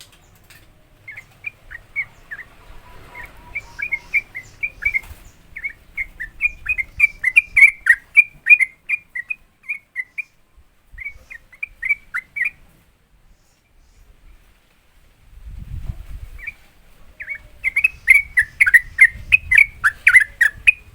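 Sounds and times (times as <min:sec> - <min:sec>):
bird singing whistled notes: 0:00.2 - 0:12.6, 0:17.2 - 0:20.9.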